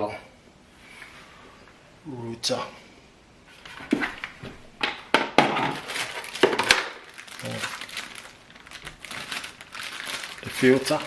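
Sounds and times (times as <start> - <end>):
packaging rustling and crinkling: 5.4 - 11.0.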